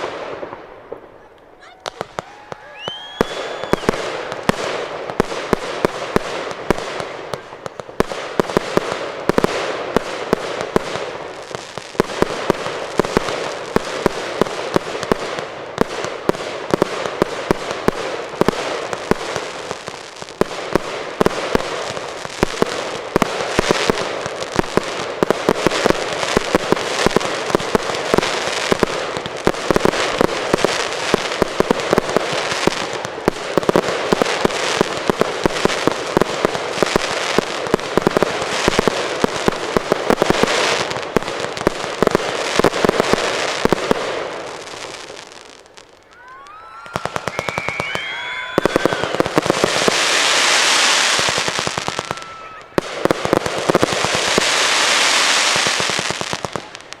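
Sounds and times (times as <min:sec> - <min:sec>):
fireworks crackling and banging: 0:00.0 - 0:57.0
firework whistle: 0:01.0 - 0:04.6, 0:46.0 - 0:53.0.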